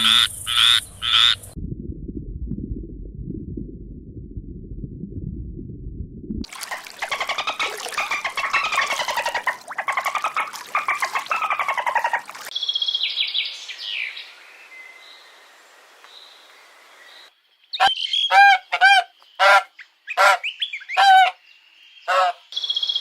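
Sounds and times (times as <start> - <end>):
harsh pulsed bird squawking: 0.0 - 1.5.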